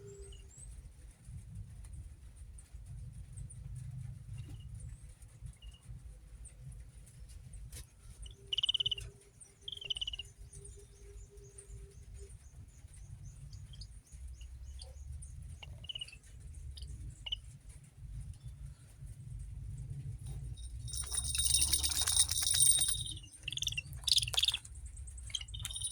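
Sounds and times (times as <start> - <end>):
bird chirping: 8.2 - 17.5, 20.6 - 25.9
low background rumble: 12.0 - 25.9.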